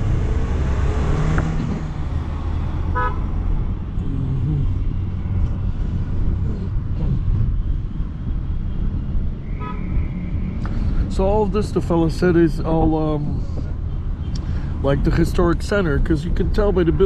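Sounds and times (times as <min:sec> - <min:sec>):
traffic engines rumbling: 0:00.0 - 0:17.0
car horn honk: 0:02.9 - 0:03.3, 0:09.6 - 0:09.9.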